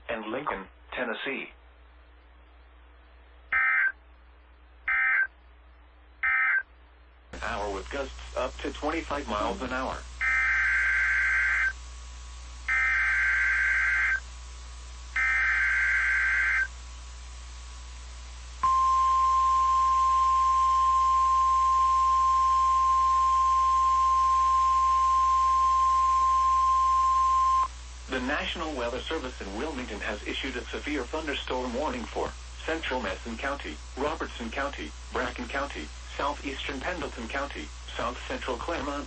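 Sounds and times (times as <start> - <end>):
warbling two-tone data bursts: 10.2 - 11.8, 12.7 - 14.2, 15.2 - 16.7.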